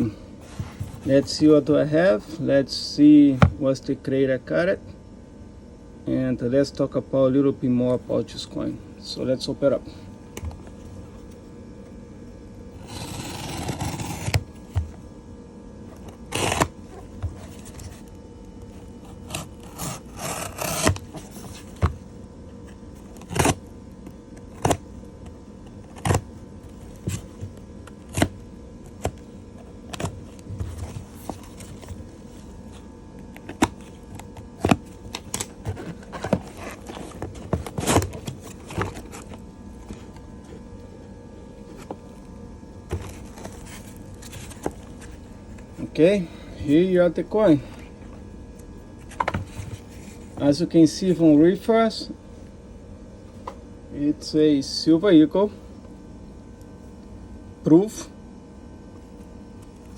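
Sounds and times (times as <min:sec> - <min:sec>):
cardboard packaging handled: 0:12.8 - 0:15.0, 0:16.0 - 0:22.1, 0:24.4 - 0:40.6, 0:42.8 - 0:45.9.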